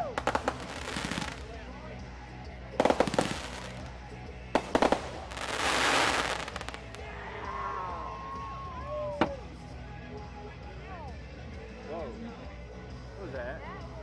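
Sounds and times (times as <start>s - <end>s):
fireworks bangs: 0.1s - 1.6s, 2.8s - 3.9s, 4.6s - 7.0s
crackling hiss: 4.6s - 7.0s.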